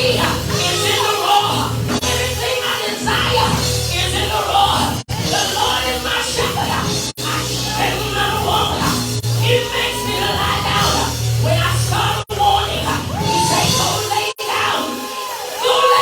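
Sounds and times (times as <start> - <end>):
church worship music: 0.0 - 16.0
congregation shouting: 4.6 - 16.0.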